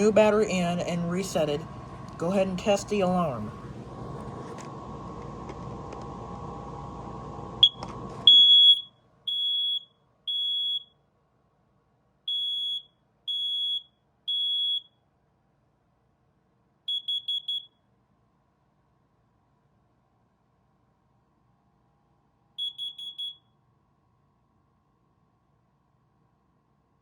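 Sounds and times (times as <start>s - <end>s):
smoke alarm beeps: 7.6s - 11.0s, 12.3s - 15.0s, 16.9s - 17.8s, 22.6s - 23.6s
smoke alarm chirps: 7.6s - 11.0s, 12.3s - 15.0s, 16.9s - 17.8s, 22.6s - 23.6s.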